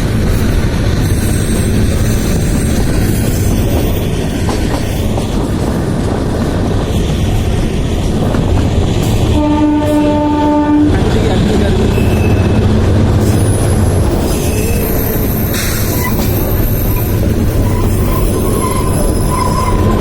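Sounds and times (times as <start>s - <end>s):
wheels clattering on rails: 0.0s - 10.0s, 11.0s - 20.0s
train rumbling: 0.0s - 20.0s
train horn: 9.4s - 11.1s.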